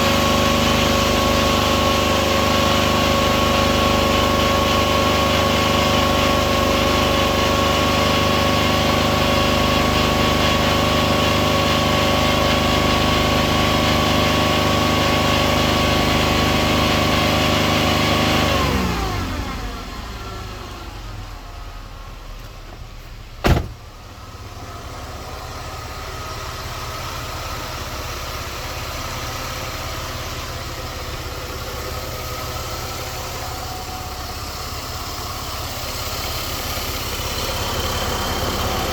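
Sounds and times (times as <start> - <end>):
car engine idling: 19.2 - 38.9.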